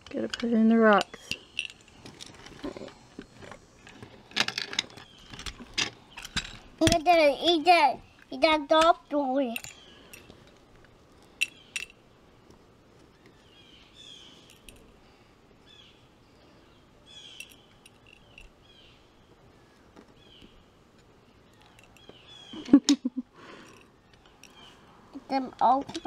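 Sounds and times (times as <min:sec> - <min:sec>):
bird chirping: 0:07.5 - 0:10.2, 0:11.4 - 0:11.9, 0:13.1 - 0:14.8, 0:15.6 - 0:24.9.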